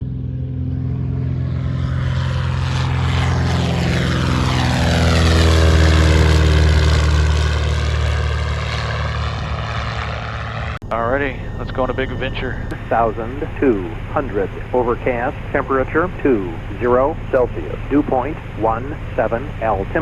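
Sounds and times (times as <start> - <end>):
propeller airplane passing: 0.0 - 20.0.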